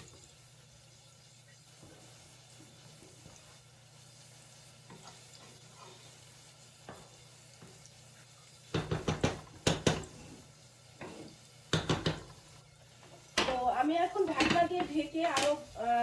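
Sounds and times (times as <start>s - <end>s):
utensil scraping cooking pot: 4.8s - 7.9s, 8.7s - 16.0s.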